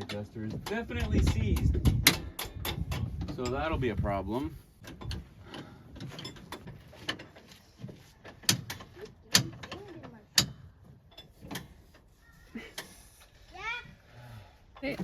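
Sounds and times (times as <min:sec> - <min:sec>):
metal tool clicks and knocks: 0:00.0 - 0:03.7.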